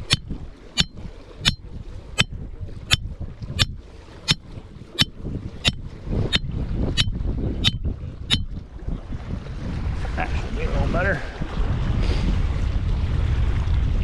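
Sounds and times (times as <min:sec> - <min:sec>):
sharp clicks: 0:00.0 - 0:00.2
wind rumble on microphone: 0:00.0 - 0:14.0.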